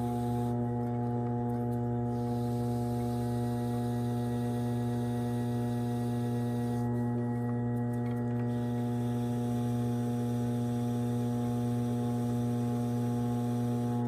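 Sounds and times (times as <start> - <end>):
pottery wheel motor humming: 0.0 - 14.0.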